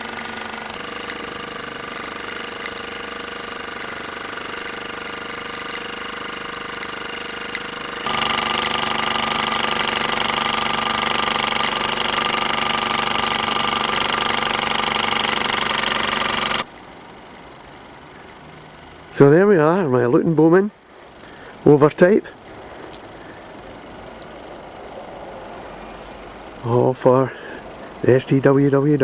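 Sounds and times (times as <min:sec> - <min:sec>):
toy steam engine clattering: 0:00.0 - 0:16.9.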